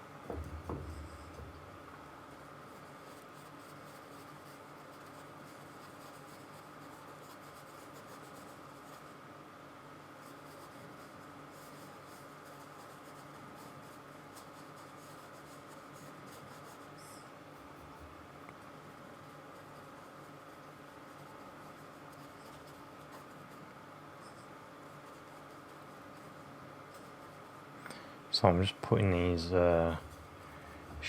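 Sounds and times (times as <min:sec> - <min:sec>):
paintbrush scratching on canvas: 0:02.2 - 0:09.2, 0:10.1 - 0:18.1, 0:19.2 - 0:27.7.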